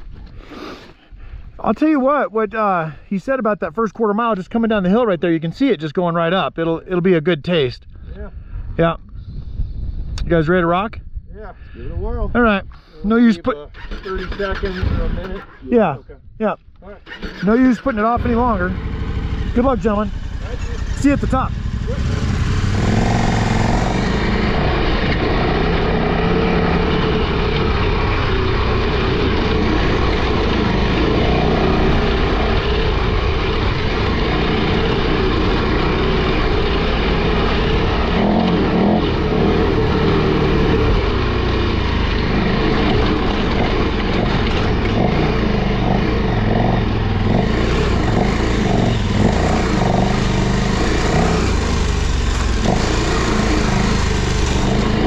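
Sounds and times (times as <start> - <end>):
motorcycle engine under load: 13.7 - 15.7, 16.9 - 55.0.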